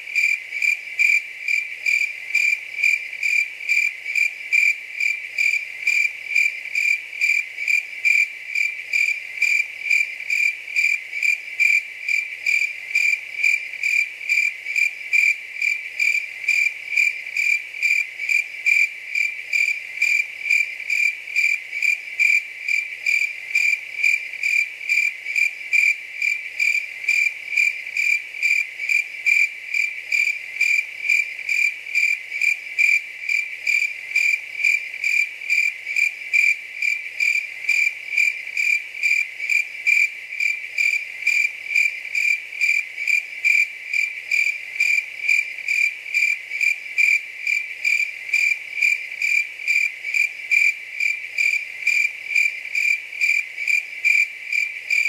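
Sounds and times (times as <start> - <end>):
cricket chirping: 0.0 - 55.0.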